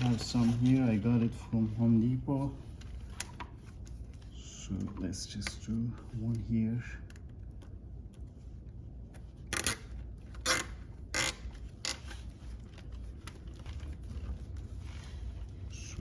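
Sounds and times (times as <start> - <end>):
zip tie ratchet zipping: 9.5 - 12.2.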